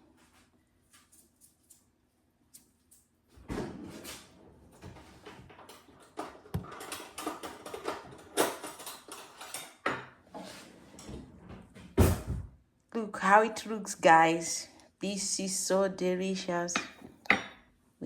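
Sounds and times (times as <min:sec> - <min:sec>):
dishes and utensils clinking: 0:05.7 - 0:10.2, 0:16.8 - 0:17.6.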